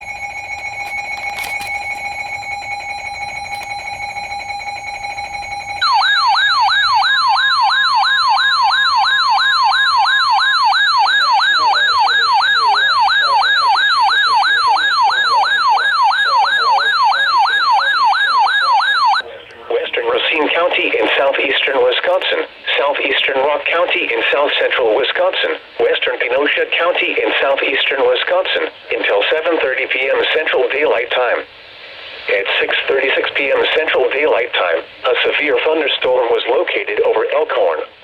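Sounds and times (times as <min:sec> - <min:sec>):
warbling siren tone: 0:00.0 - 0:19.2
electronic alarm tone: 0:00.0 - 0:19.3.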